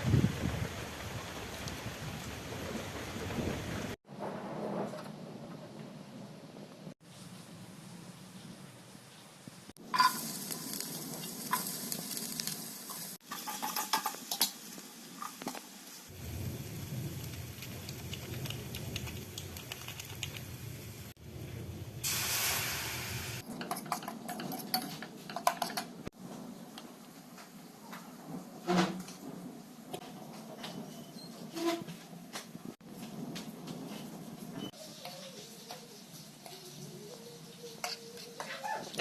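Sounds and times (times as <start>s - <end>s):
food sizzling in a pan: 9.8s - 21.2s, 22.0s - 23.5s, 34.7s - 38.5s
spoon scraping against pan: 34.8s - 38.8s.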